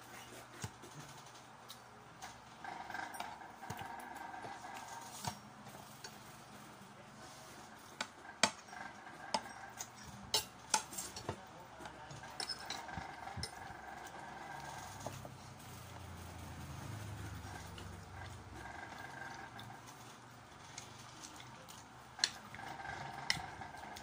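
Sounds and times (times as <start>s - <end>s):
utensils clinking on a plate: 7.9s - 15.8s.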